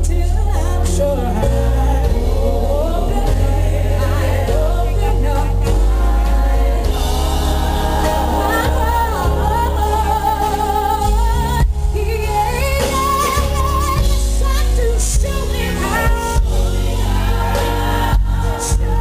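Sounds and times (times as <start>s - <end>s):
gospel band with heavy bass: 0.0s - 19.0s.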